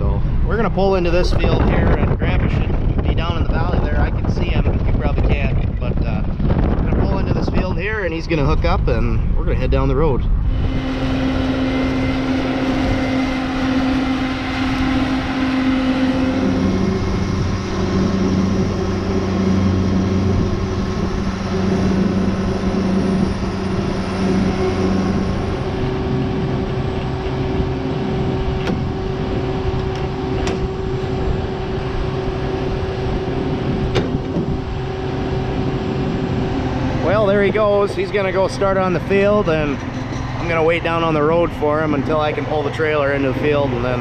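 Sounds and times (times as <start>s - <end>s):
pickup truck engine running: 6.3s - 44.0s.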